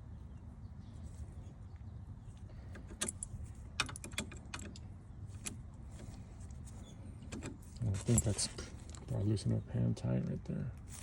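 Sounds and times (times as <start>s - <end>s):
light metallic clicks and rattles: 2.6s - 6.6s.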